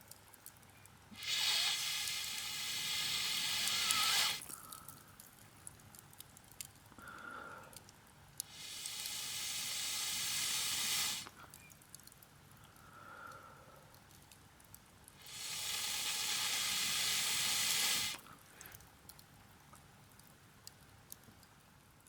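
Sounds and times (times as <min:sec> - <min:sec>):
air blown onto campfire: 0:01.2 - 0:04.4, 0:08.4 - 0:11.3, 0:15.2 - 0:18.2
faint intake of breath: 0:01.2 - 0:04.9, 0:08.5 - 0:11.4, 0:15.2 - 0:18.8.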